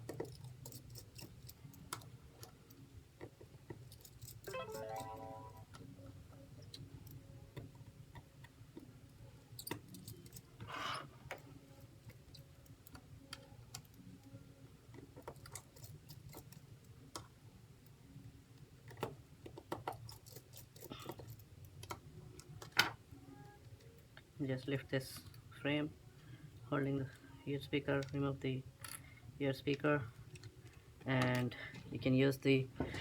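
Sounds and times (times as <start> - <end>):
low steady hum: 4.5 - 7.6.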